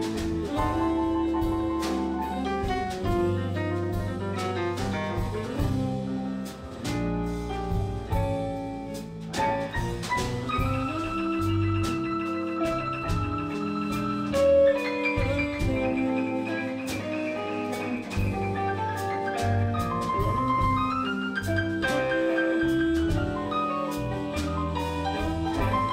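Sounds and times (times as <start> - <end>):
blues band playing: 0.0 - 25.9
lead instrument long high notes: 10.4 - 25.9.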